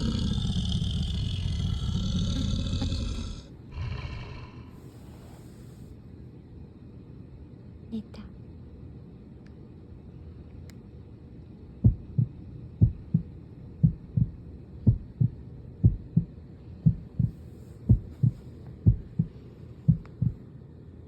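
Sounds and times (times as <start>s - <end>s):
low steady hum: 0.0s - 21.0s
heartbeat thumps: 11.8s - 20.4s.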